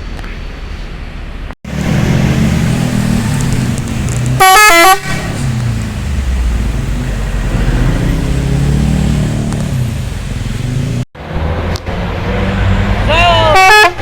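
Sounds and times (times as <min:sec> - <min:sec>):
bus engine running: 0:00.0 - 0:14.0
road noise: 0:00.0 - 0:14.0.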